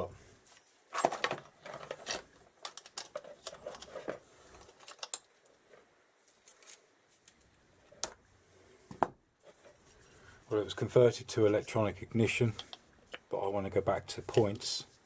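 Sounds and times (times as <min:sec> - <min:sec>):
metal parts clinking and rattling: 0:00.9 - 0:05.4, 0:06.2 - 0:06.8.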